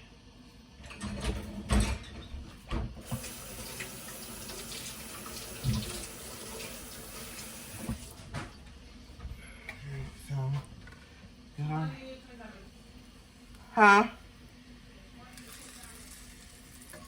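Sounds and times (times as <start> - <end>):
tap water running into sink: 3.0 - 8.2, 15.4 - 17.0.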